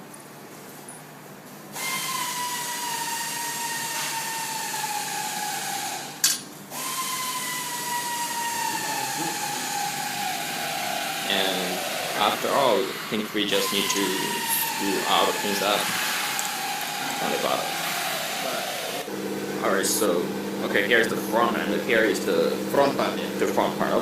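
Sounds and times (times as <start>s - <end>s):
power drill driving screws: 1.8s - 19.1s.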